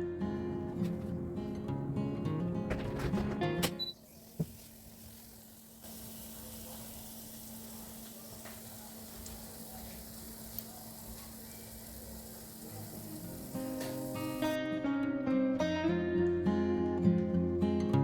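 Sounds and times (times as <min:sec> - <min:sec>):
air fryer low hum: 0:03.8 - 0:14.6
chicken sizzling in air fryer: 0:03.8 - 0:14.6.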